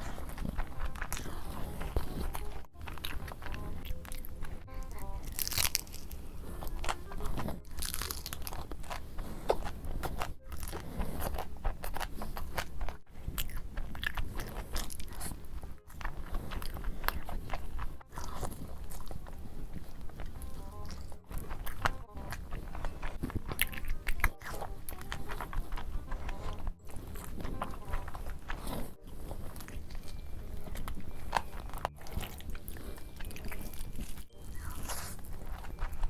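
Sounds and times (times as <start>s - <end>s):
person chewing crunchy food: 0.0s - 36.0s.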